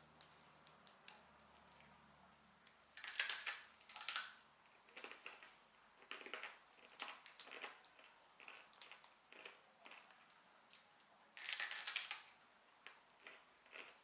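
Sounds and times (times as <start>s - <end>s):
dry noodles being crunched: 11.4s - 14.0s.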